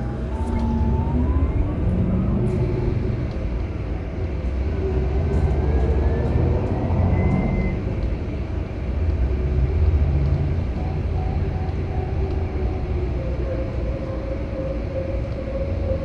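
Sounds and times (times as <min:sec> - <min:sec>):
faint rising whine: 0:00.0 - 0:03.3
diesel engine rumble: 0:00.0 - 0:16.0.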